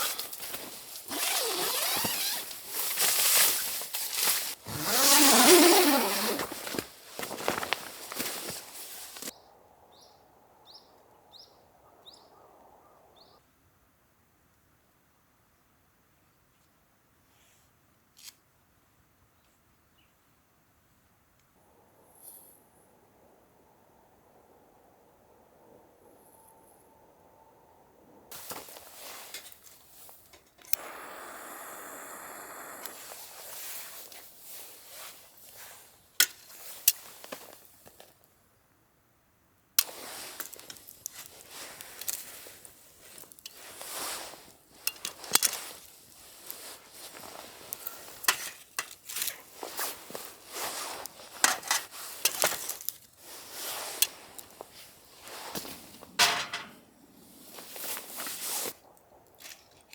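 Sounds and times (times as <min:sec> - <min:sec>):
steady hiss: 0:28.3 - 0:34.0
dishes and utensils clinking: 0:56.2 - 0:56.8.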